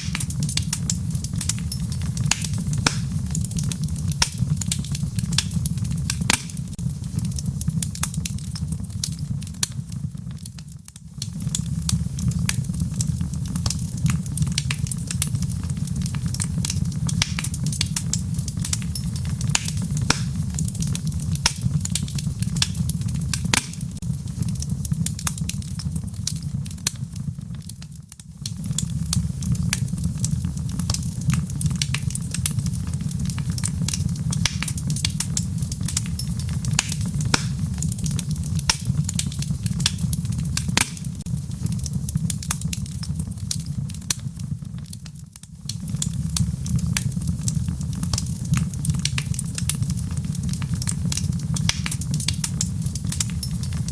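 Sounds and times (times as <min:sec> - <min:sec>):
fire crackling in a fireplace: 0:00.0 - 0:53.9.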